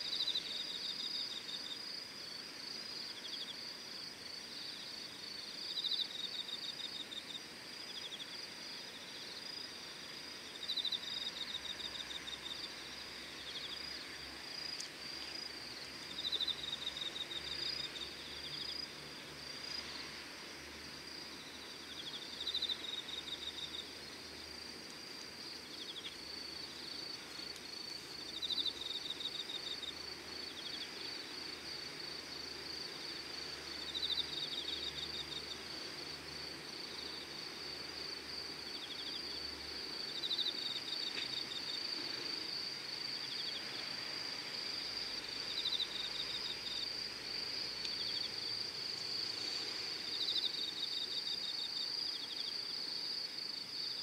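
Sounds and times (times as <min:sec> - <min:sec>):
insect pulsed chirping: 0:21.1 - 0:54.0.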